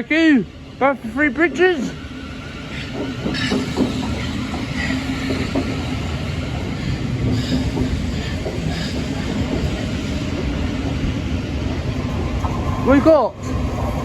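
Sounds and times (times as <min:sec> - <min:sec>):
train wheels rumbling on rail: 0:00.0 - 0:14.0
wheels clacking over rail joints: 0:02.7 - 0:13.9.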